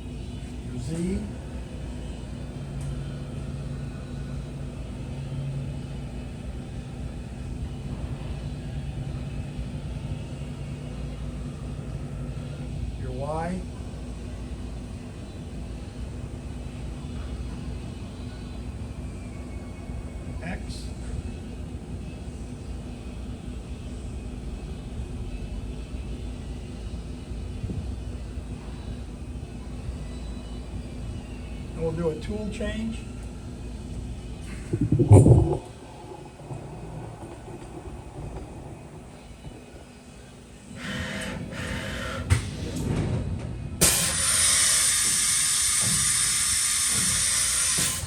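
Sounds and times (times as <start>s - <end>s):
machine motor hum: 33.8s - 42.9s.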